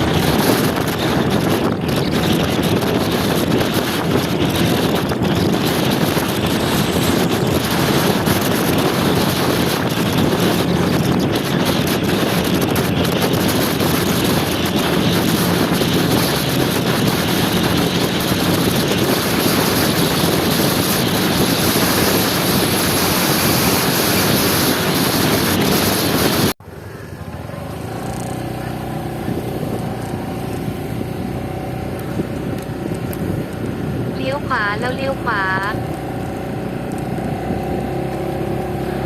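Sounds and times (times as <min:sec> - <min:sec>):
wind buffeting microphone: 0:00.0 - 0:26.6, 0:27.2 - 0:39.0
road noise: 0:00.0 - 0:39.0
scooter engine hum: 0:00.0 - 0:39.0.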